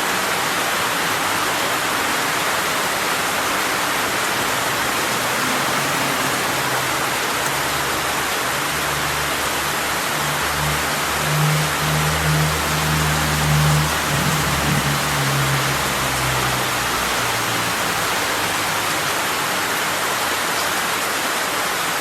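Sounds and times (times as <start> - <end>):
rain falling: 0.0 - 22.0.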